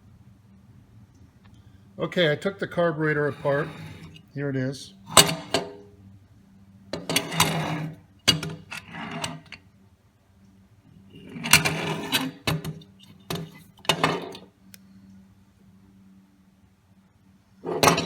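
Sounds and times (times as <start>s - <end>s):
metal parts clinking and rattling: 7.0s - 9.6s, 17.7s - 18.0s.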